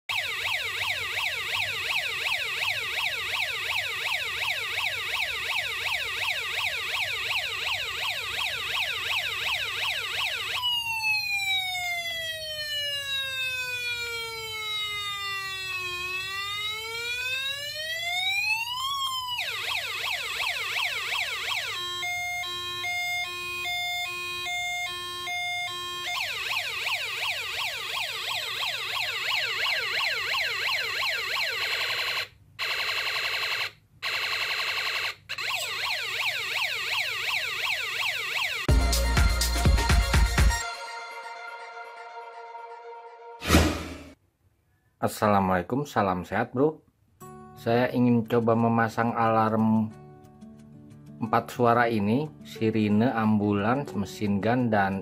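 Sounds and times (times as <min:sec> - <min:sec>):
electronic siren yelp: 0:00.1 - 0:38.7
siren wail: 0:00.1 - 0:38.7
two-tone hi-lo siren: 0:00.1 - 0:38.8.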